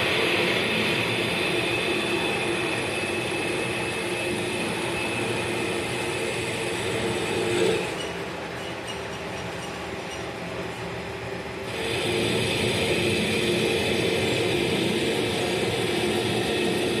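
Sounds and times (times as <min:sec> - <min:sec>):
lathe running a cut: 0:00.0 - 0:08.0, 0:11.6 - 0:17.0.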